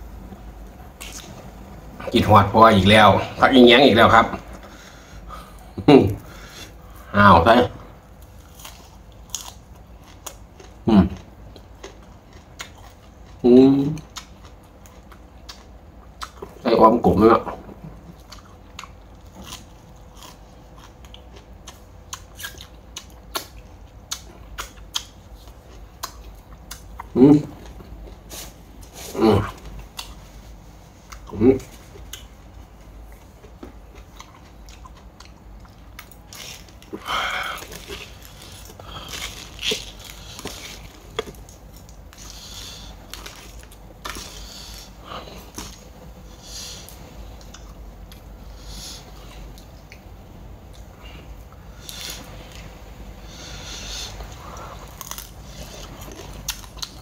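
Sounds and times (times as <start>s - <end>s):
person chewing crab crunchily: 1.0s - 1.4s, 8.2s - 16.6s, 17.9s - 52.7s, 53.5s - 57.0s
wet chewing: 33.0s - 48.3s.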